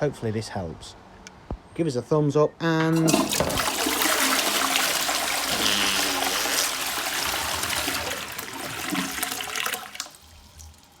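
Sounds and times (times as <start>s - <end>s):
water rushing through pipes: 2.9s - 11.0s
water trickling: 3.0s - 11.0s.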